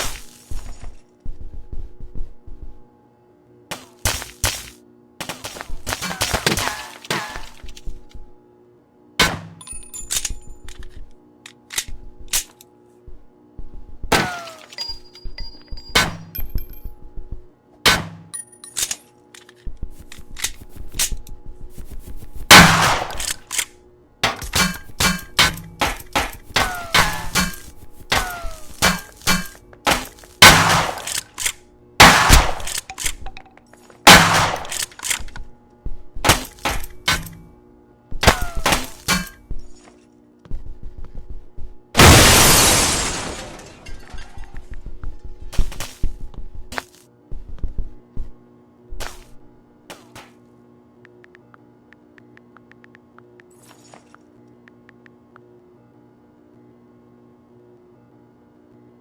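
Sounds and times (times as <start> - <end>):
steady low hum: 0.0 - 59.0
sharp echoing bangs: 32.0 - 32.7, 34.1 - 34.8.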